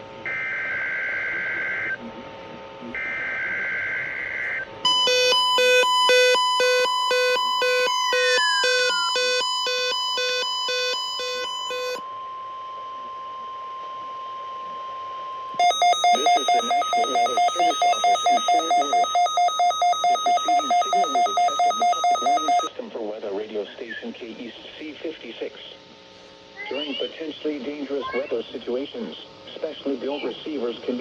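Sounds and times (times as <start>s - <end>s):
electronic alarm beeping: 4.9s - 12.1s, 15.6s - 22.7s
steady high tone: 6.6s - 22.7s
buzzy digital data bursts: 15.6s - 22.7s.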